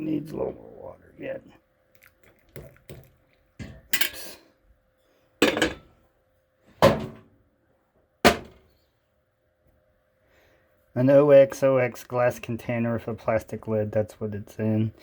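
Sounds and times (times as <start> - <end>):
faint steady hum: 0.0 - 15.0
dishes clunking down: 2.6 - 4.2, 5.4 - 6.0
dishes clattering: 5.4 - 6.0.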